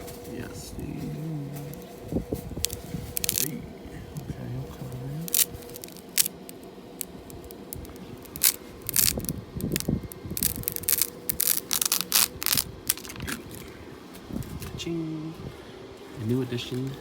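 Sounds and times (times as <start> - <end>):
faint steady hum: 0.0 - 17.0
paper crinkling and tearing: 0.8 - 3.7, 4.8 - 13.7.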